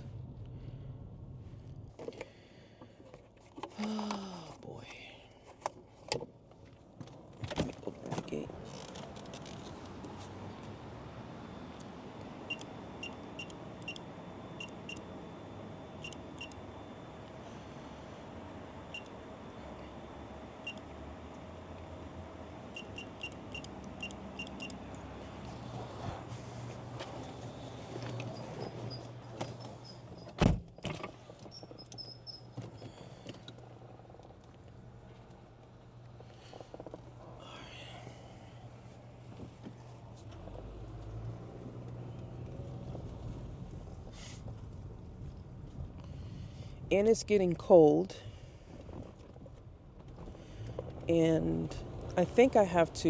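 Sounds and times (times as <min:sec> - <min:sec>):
low steady hum: 0:00.0 - 0:53.0
keypad beeps: 0:12.5 - 0:14.0, 0:14.6 - 0:15.0, 0:16.0 - 0:16.6, 0:22.8 - 0:24.8.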